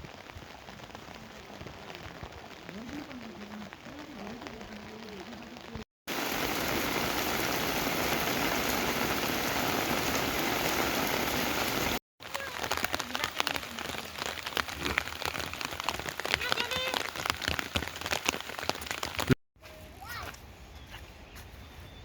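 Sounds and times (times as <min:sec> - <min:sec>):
steady rain falling: 0:00.0 - 0:19.4.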